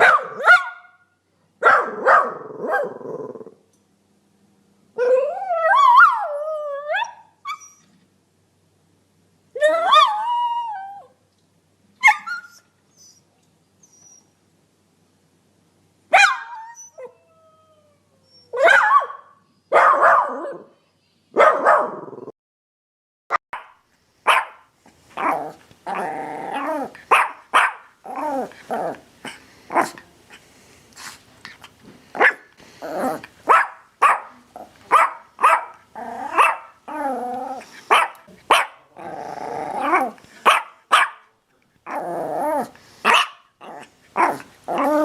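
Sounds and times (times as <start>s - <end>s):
dog barking: 0.0s - 1.0s, 1.6s - 3.0s, 16.1s - 16.6s, 18.6s - 20.7s, 21.4s - 22.0s, 23.5s - 25.4s, 27.1s - 27.9s, 32.2s - 32.5s, 33.5s - 36.8s, 37.9s - 38.8s, 40.0s - 41.3s, 43.0s - 43.5s.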